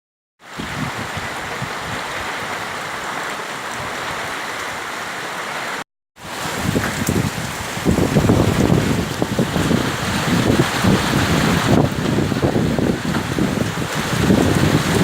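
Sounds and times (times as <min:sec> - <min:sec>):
strong wind: 0:00.4 - 0:03.0, 0:06.2 - 0:15.0
heavy rain: 0:00.4 - 0:15.0
wind rumbling on microphone: 0:00.5 - 0:02.8, 0:06.2 - 0:15.0.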